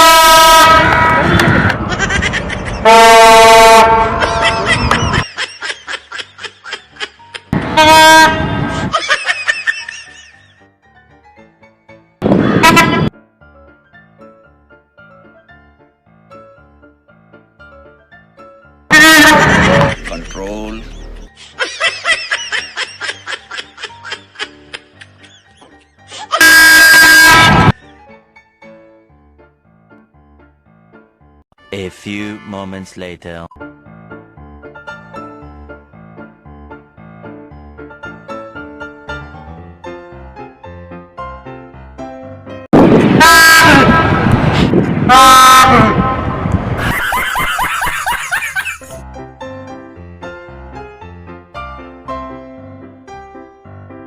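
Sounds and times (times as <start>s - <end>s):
train horn blasting: 0.0s - 1.8s, 2.8s - 4.7s, 7.6s - 8.9s, 12.4s - 13.2s, 18.9s - 19.9s, 26.3s - 27.8s, 43.0s - 46.5s
high-pitched giggles: 1.8s - 2.8s
rushing noise: 42.8s - 47.8s.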